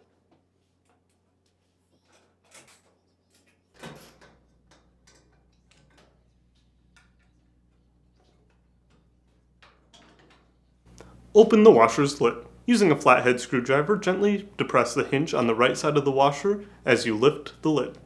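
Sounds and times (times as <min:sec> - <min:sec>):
faint low hum: 0:10.9 - 0:18.0.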